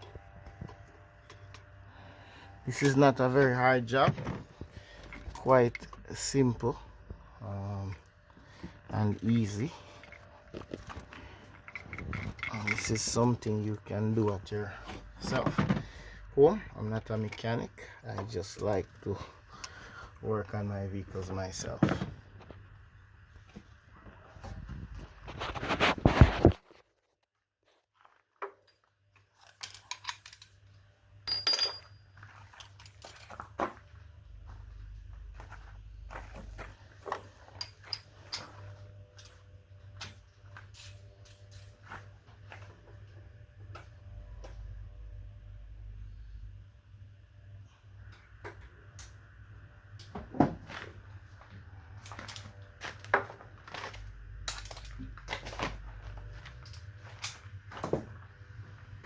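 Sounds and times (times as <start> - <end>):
hand tools and metal parts clunking: 0.0 - 26.6, 28.4 - 45.0, 47.9 - 59.0
steady low hum: 0.0 - 26.6, 30.2 - 59.0
metal tools clinking and rattling: 5.0 - 6.6, 8.9 - 15.7, 29.4 - 33.6, 36.4 - 42.1, 51.9 - 58.0.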